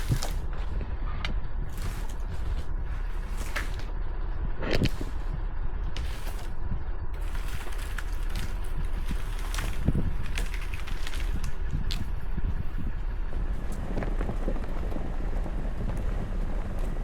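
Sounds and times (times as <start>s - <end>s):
off-road vehicle rumble: 0.0s - 17.0s.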